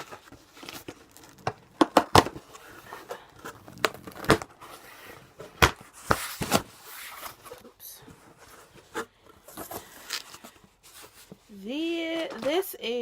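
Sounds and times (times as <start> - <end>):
package crinkling: 0.0 - 7.7.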